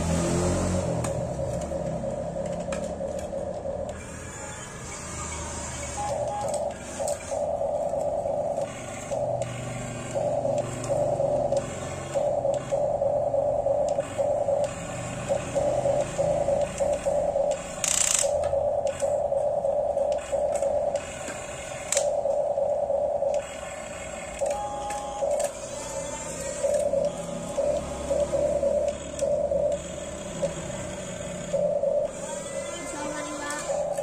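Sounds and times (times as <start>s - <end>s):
small electric motors whirring: 23.3s - 34.0s.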